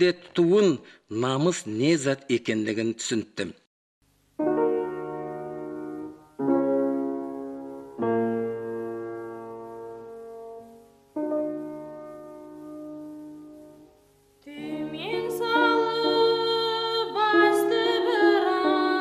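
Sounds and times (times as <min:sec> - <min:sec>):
keyboard playing slow chords: 0:04.4 - 0:16.6.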